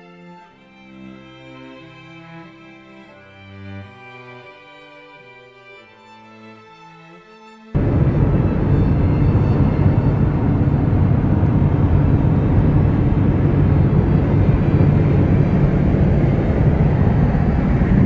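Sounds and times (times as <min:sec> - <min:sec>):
diesel truck cruising: 0:07.8 - 0:18.0.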